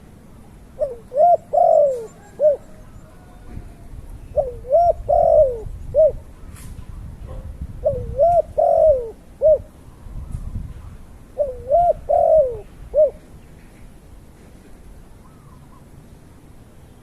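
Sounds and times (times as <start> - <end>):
dove cooing: 0.7 - 6.6, 7.8 - 9.8, 11.4 - 13.3.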